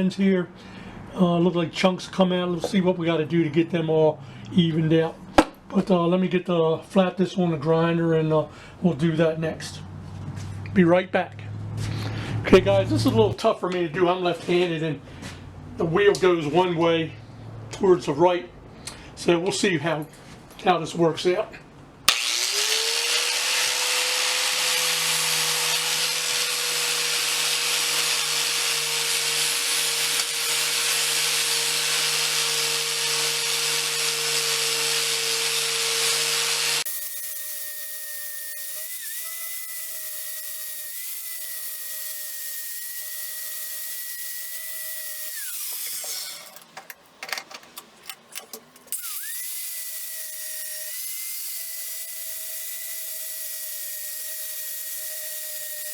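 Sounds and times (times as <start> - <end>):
angle grinder grinding steel: 22.1 - 46.6, 48.9 - 55.9.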